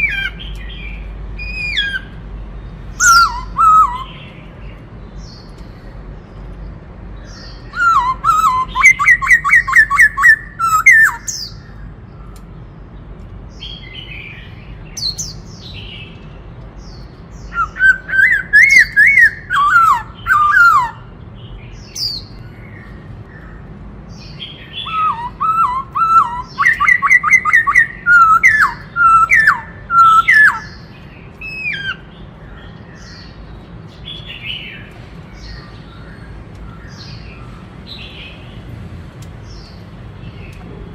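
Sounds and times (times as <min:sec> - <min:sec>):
bird singing whistled notes: 0:00.0 - 0:05.5, 0:07.2 - 0:12.3, 0:16.8 - 0:21.1, 0:21.7 - 0:23.5, 0:24.2 - 0:38.4
bird squeaky notes: 0:02.9 - 0:04.1.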